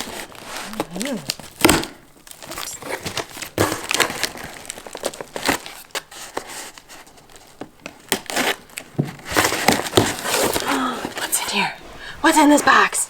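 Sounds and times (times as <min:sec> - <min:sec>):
packaging crinkling and rustling: 0:00.0 - 0:12.9.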